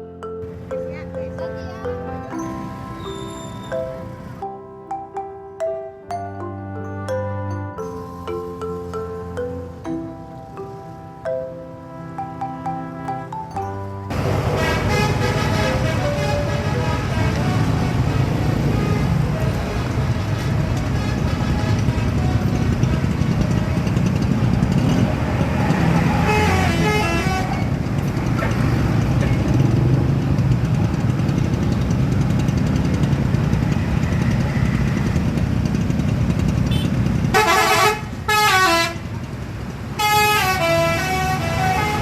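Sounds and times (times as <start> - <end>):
bus engine and road noise: 0.0 - 4.4, 6.6 - 42.0
bus horn playing short tunes: 14.1 - 23.3, 26.2 - 27.7, 36.7 - 39.1, 40.0 - 42.0.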